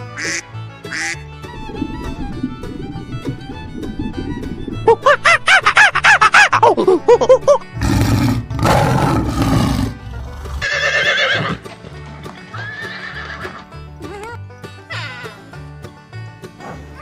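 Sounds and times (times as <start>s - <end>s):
background music: 0.0s - 17.0s
horse neighing: 7.8s - 11.6s, 12.6s - 13.6s.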